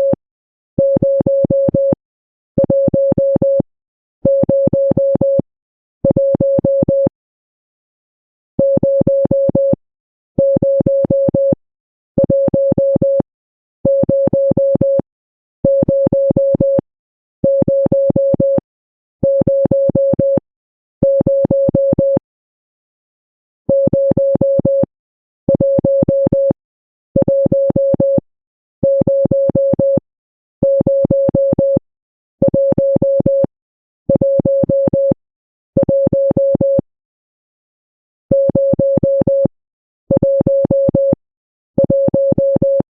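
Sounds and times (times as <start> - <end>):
morse code beeps: 13.9 - 15.0, 23.7 - 24.9, 27.2 - 28.2, 30.6 - 31.8, 35.8 - 36.8, 40.1 - 41.2, 41.8 - 42.9.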